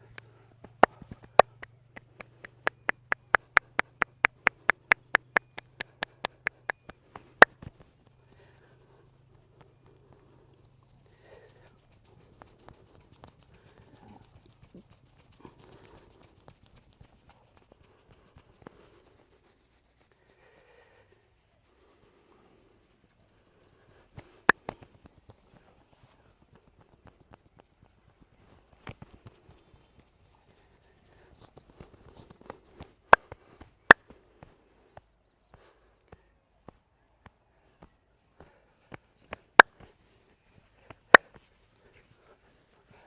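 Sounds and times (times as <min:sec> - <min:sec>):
hands slapping skin: 0:00.0 - 0:08.5, 0:35.5 - 0:40.0, 0:40.8 - 0:41.5
hands rubbing and patting skin: 0:00.0 - 0:43.0.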